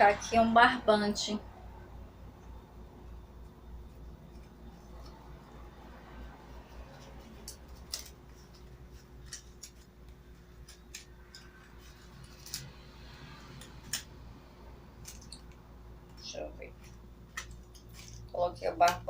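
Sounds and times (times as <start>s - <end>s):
paper and string rustling: 3.8s - 14.0s, 15.0s - 18.9s.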